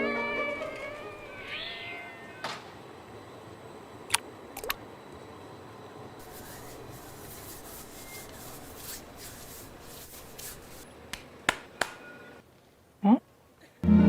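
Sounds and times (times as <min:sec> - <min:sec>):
soft rubbing and scraping: 0:06.2 - 0:10.9.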